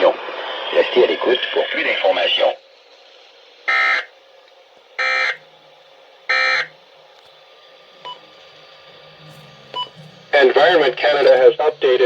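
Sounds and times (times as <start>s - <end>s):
faint low hum: 5.3s - 12.0s.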